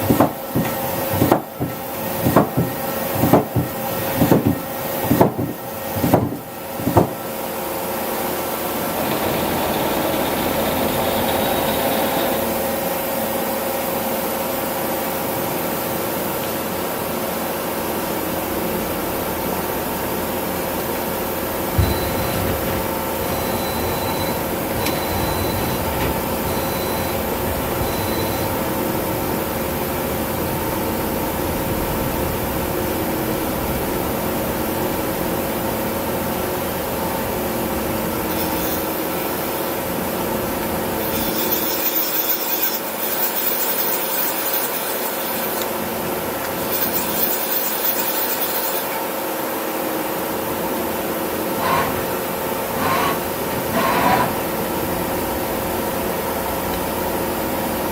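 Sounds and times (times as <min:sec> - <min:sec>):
lathe running with grinding: 0:07.8 - 0:13.8, 0:38.1 - 0:40.0, 0:40.6 - 0:49.6, 0:50.5 - 0:56.6.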